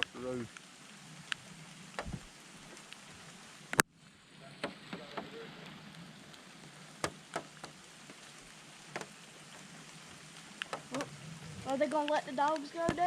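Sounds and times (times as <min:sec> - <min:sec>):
steady rain hiss: 0:00.0 - 0:13.0.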